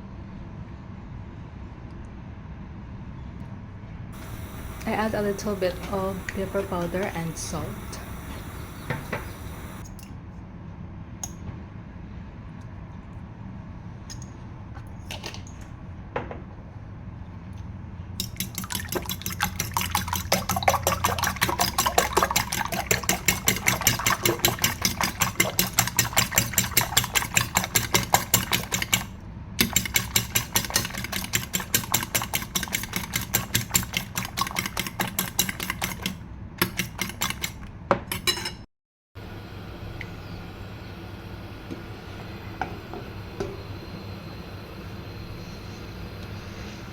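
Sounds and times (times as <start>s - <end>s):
steady low hum: 4.2s - 9.8s
whisk clicking against bowl: 4.2s - 9.8s, 18.2s - 38.3s.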